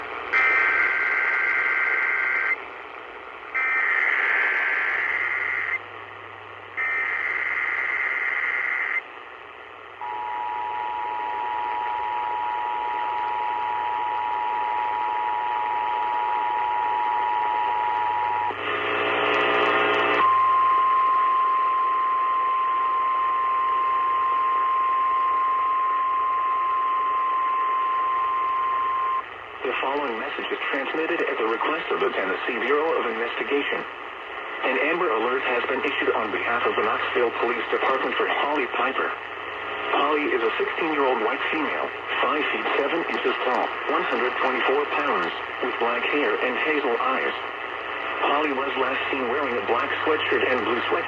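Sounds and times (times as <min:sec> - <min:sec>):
radio static hiss: 0:00.0 - 0:51.0
screeching data bursts: 0:00.4 - 0:02.6, 0:03.6 - 0:05.8, 0:06.8 - 0:09.0
two-tone attention signal: 0:20.2 - 0:29.2.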